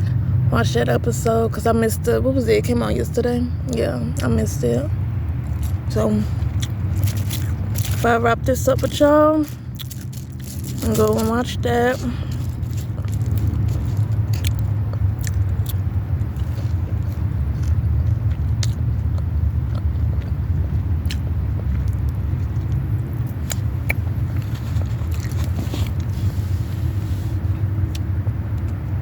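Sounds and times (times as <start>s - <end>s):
low rumble: 3.5s - 29.0s
person chewing food: 5.0s - 8.1s, 8.8s - 28.8s
sharp crunches: 5.4s - 8.1s, 8.7s - 20.4s.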